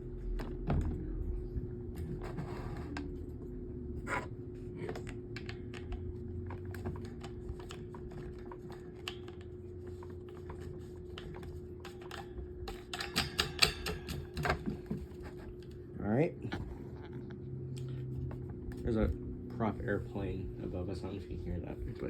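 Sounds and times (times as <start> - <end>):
steady low hum: 0.0 - 22.0
plastic fan parts clicking: 4.8 - 15.8.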